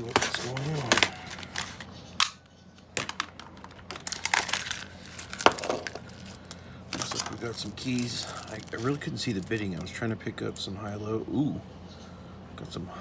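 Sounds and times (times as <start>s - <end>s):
rustling: 0.0s - 1.9s, 3.8s - 10.0s
padlock and keys clinking: 3.0s - 9.9s.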